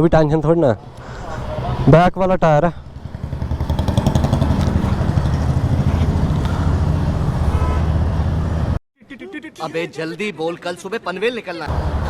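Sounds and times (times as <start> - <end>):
motorcycle engine running: 2.8 - 8.8.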